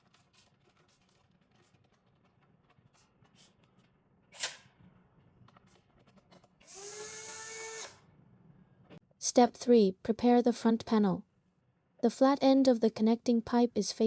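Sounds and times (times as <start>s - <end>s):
electric screwdriver whirring: 6.6s - 8.0s.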